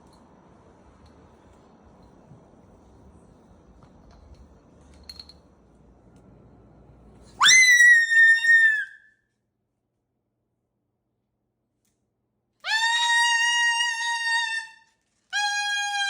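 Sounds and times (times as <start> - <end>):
shrill animal call: 7.4 - 9.1, 12.6 - 16.0.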